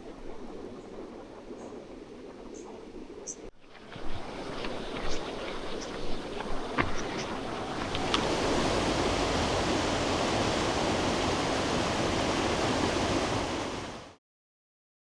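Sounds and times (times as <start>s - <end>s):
stream rushing over rapids: 7.0s - 14.2s.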